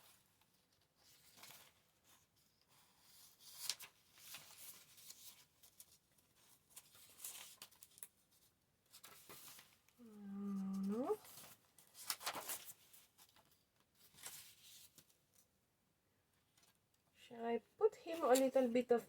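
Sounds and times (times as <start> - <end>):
paper rustling and crinkling: 0.0 - 10.0, 10.6 - 15.5.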